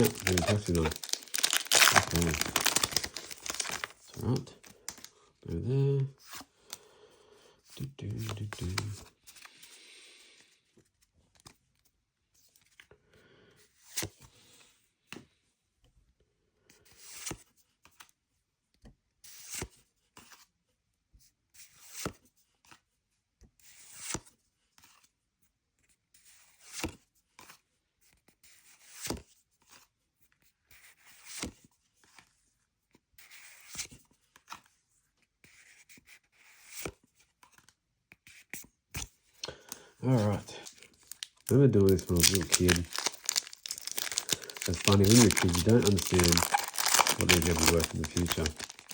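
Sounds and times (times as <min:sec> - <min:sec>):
trading cards rustling and snapping: 0:00.0 - 0:05.1, 0:08.2 - 0:09.1, 0:39.0 - 0:48.9.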